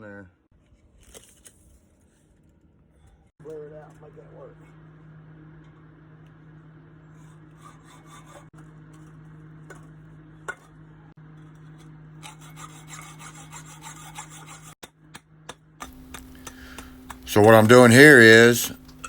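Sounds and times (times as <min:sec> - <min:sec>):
steady low hum: 0:02.0 - 0:19.0
hacksaw cutting metal pipe: 0:07.2 - 0:09.1, 0:11.6 - 0:19.0.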